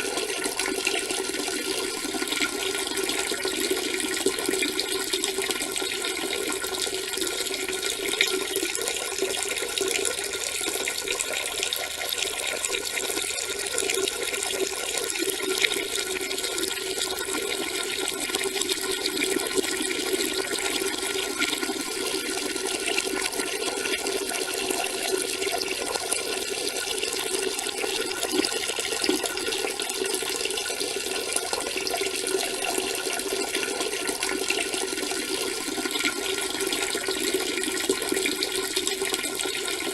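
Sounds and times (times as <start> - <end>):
urine splashing into toilet water: 0.0 - 39.9.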